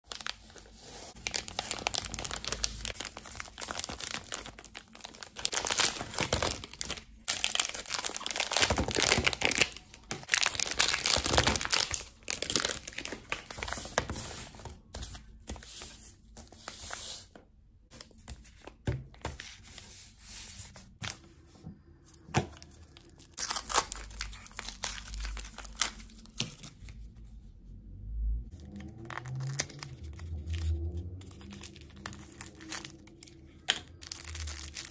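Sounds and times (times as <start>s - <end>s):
plastic wrappers tearing and crinkling: 0.0s - 14.2s, 22.9s - 26.8s, 28.6s - 34.9s.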